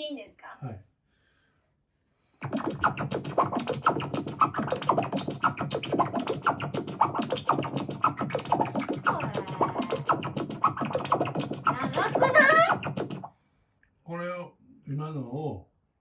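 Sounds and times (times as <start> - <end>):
comic pops and springy blips: 2.4 - 13.3.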